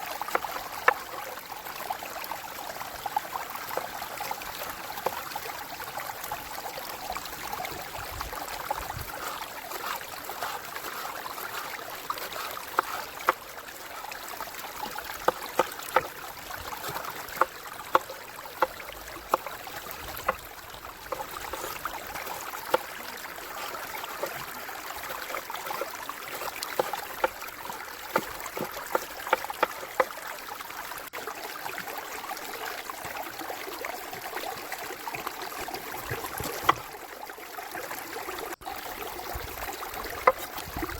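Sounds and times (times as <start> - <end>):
river flowing: 0.0 - 40.9.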